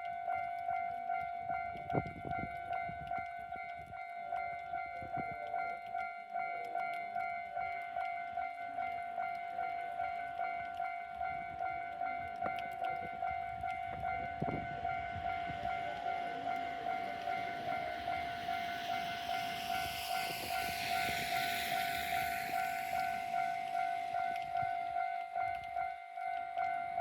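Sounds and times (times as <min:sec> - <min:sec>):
diesel railcar approaching: 0:00.0 - 0:27.0
level crossing warning bell: 0:00.0 - 0:27.0.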